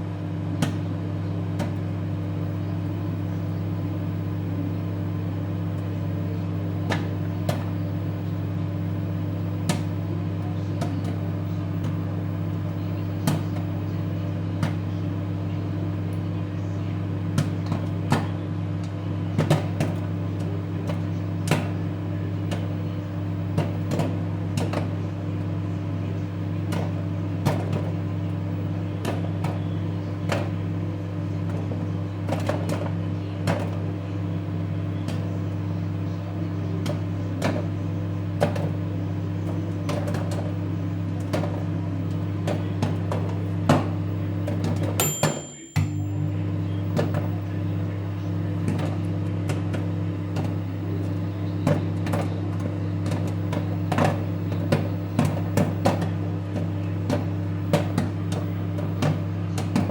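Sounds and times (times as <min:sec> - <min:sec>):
microwave oven humming: 0:00.0 - 0:59.9
popcorn kernels popping: 0:48.6 - 0:59.9.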